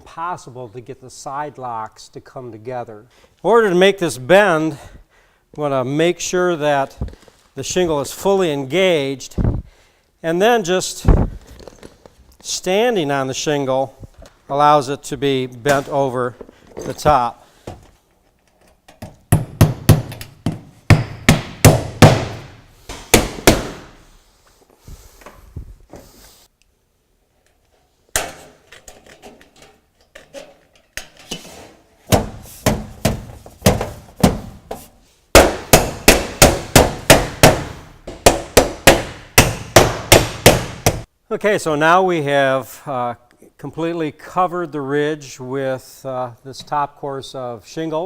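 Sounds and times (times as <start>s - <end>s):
hammer on steel roofing: 35.4s - 41.1s.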